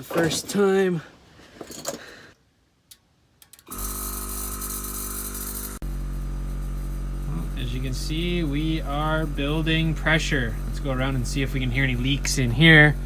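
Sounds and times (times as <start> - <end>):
air compressor humming and hissing: 3.6 - 13.0.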